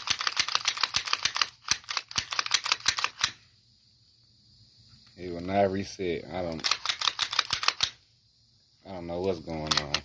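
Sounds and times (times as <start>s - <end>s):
pistol clicking: 0.0s - 3.4s, 6.6s - 8.0s.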